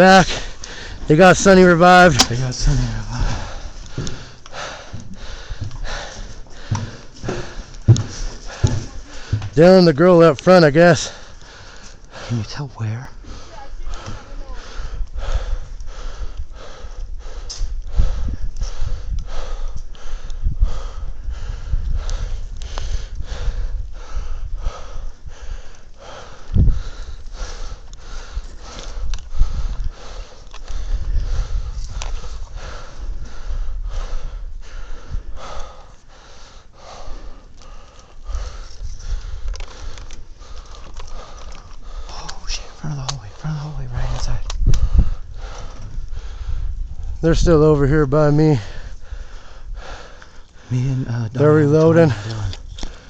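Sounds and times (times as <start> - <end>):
dull low thumps: 0.0 - 10.1, 13.9 - 35.5, 43.8 - 50.2
fast heavy breathing: 0.0 - 53.0.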